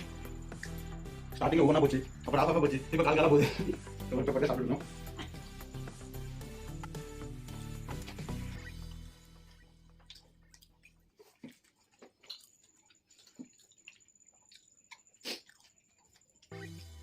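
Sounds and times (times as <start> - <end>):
man chewing with wet smacks: 0.0 - 1.2, 7.8 - 16.7
background music: 0.0 - 10.1, 16.5 - 17.0.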